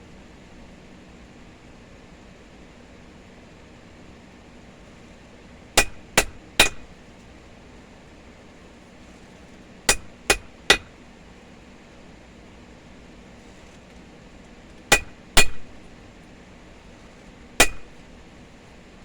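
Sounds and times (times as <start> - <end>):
hammer blows on hot steel: 5.8 - 7.0, 9.9 - 11.0, 14.9 - 15.9, 17.6 - 18.1.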